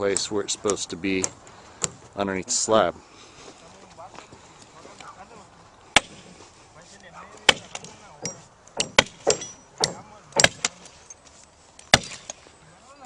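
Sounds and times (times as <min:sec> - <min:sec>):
hammer strikes: 0:06.0 - 0:06.3, 0:07.4 - 0:10.9, 0:11.9 - 0:12.4.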